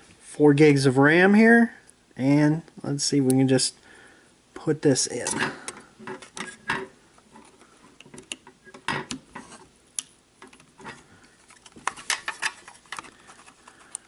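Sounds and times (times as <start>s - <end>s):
memory module clicking and scraping: 7.4s - 9.7s.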